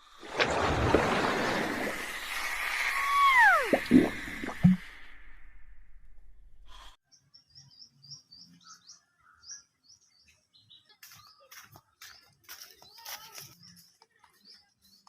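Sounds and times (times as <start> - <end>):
small birds chirping: 7.0 - 15.0.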